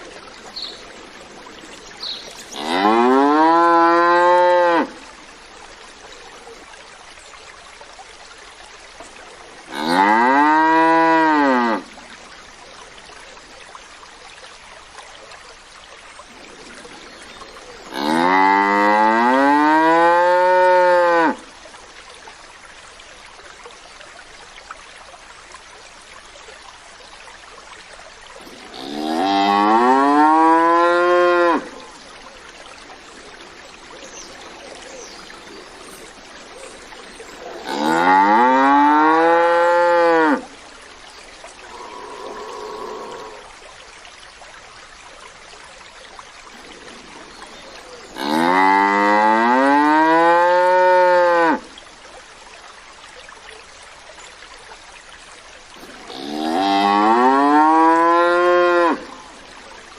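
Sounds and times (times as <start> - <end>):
cow mooing: 2.5 - 4.9, 9.7 - 11.8, 17.9 - 21.4, 28.5 - 31.8, 37.4 - 40.4, 41.6 - 43.5, 48.1 - 51.6.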